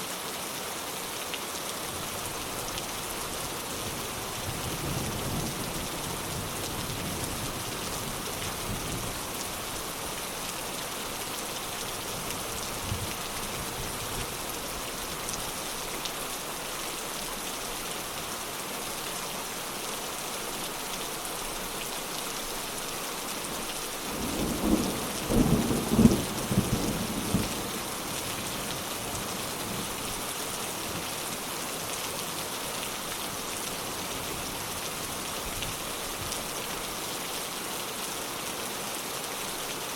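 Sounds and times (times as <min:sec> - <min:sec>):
heavy rain hissing: 0:00.8 - 0:39.9.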